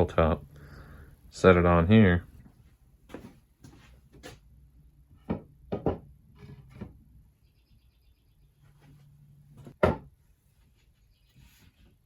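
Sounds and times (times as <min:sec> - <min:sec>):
tabletop knocking on wood: 0:05.3 - 0:06.1.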